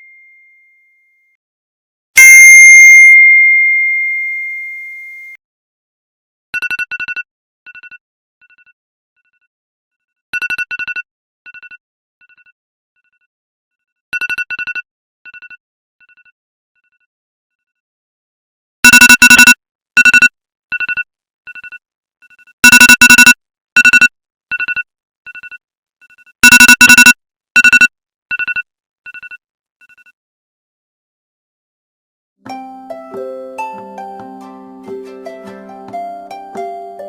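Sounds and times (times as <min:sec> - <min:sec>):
electronic beeping tone: 0:02.2 - 0:03.2, 0:18.8 - 0:20.3, 0:22.6 - 0:24.8, 0:26.4 - 0:29.3.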